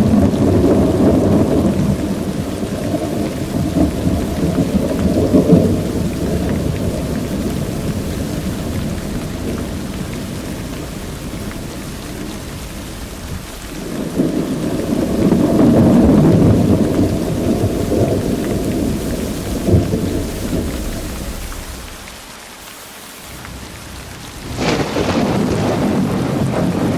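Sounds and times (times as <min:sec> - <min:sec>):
rolling thunder: 0:00.0 - 0:12.1, 0:12.8 - 0:22.0, 0:23.4 - 0:26.9
steady rain: 0:00.0 - 0:26.9
sharp thunder crack: 0:24.3 - 0:26.9.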